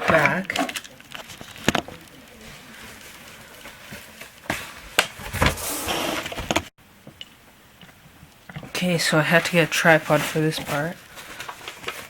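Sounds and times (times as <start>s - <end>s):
packaging sliding scrape: 0.2s - 6.7s.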